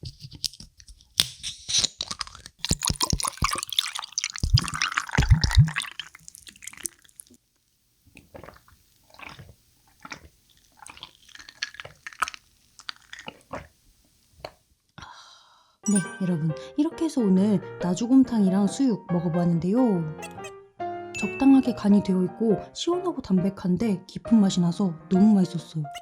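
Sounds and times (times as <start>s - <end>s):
wet mouth clicks drinking: 2.6s - 7.3s, 8.2s - 13.7s, 20.2s - 20.5s
swallowing: 2.6s - 7.4s, 8.1s - 13.8s.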